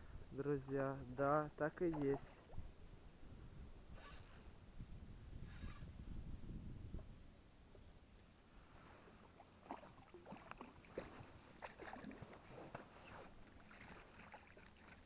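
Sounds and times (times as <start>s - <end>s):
water splashing against a boat: 1.8s - 2.7s, 9.0s - 15.0s.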